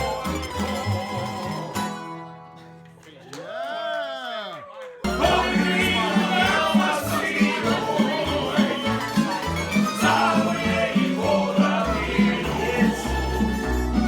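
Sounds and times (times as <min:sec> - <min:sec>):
pulsing bass line: 0:05.1 - 0:14.0.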